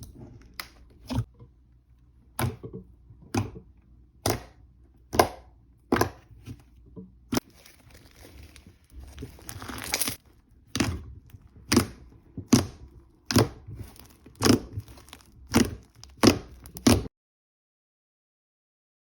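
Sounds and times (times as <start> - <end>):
rustling: 7.4 - 11.5, 13.3 - 17.0.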